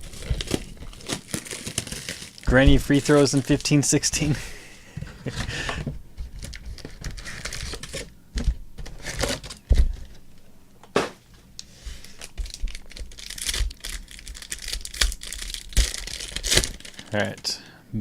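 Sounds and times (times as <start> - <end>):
wrappers crinkling and tearing: 0.0 - 4.4, 6.4 - 8.1, 8.9 - 9.6, 12.0 - 17.6.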